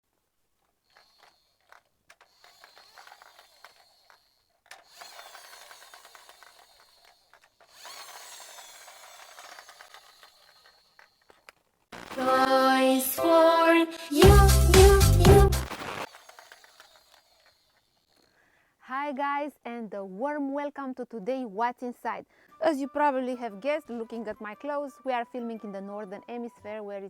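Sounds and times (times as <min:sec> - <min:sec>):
light mechanical rasping: 0:00.6 - 0:12.2, 0:15.7 - 0:18.4
musical intro jingle: 0:12.1 - 0:15.7.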